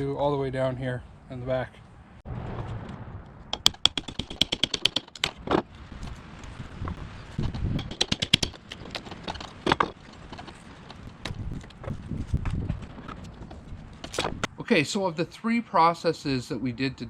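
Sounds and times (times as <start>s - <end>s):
sharp knocks: 2.4s - 5.7s, 6.8s - 10.5s
pry bar clicking and rattling: 3.6s - 5.6s, 7.4s - 11.4s.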